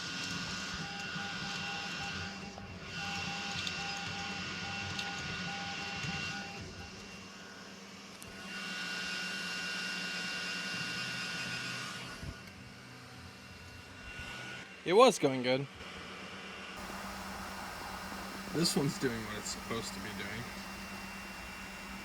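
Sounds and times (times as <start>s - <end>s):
faint pulsing tone: 16.8s - 22.0s
hissing rush: 16.8s - 22.0s
printer motors and fans whining: 16.8s - 22.0s.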